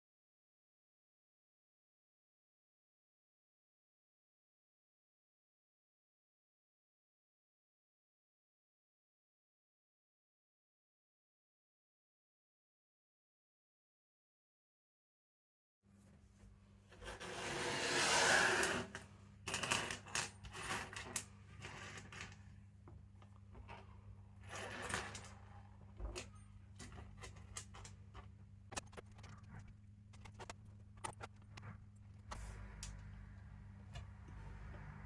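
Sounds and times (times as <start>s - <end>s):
steady low hum: 21.4s - 35.0s.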